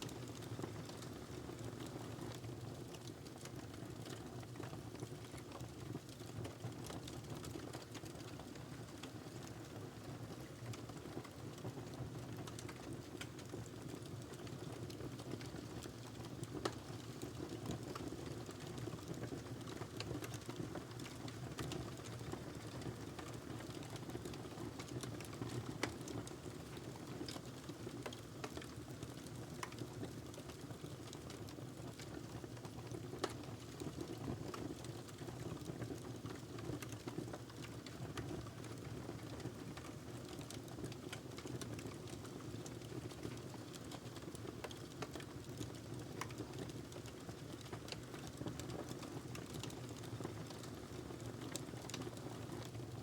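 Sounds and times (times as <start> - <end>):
wood fire crackling and popping: 0.1 - 53.0.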